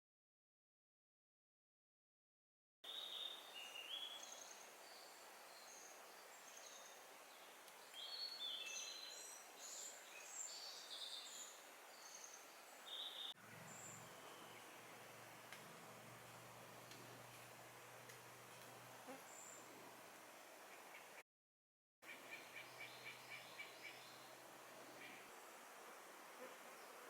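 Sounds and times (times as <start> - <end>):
birds singing and calling: 2.9 - 15.0.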